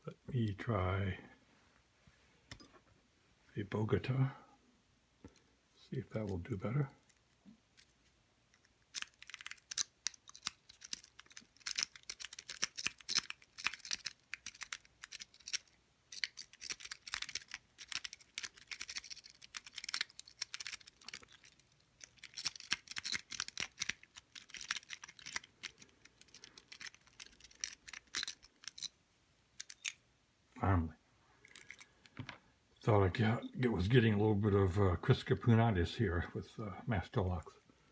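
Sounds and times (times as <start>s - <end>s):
lock pick clicking and scraping: 6.9s - 29.0s, 29.6s - 30.0s, 31.4s - 32.3s.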